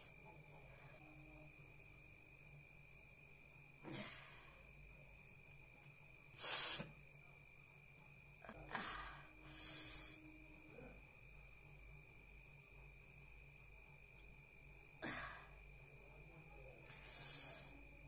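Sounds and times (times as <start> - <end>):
woman nasal burst: 6.4 - 7.0.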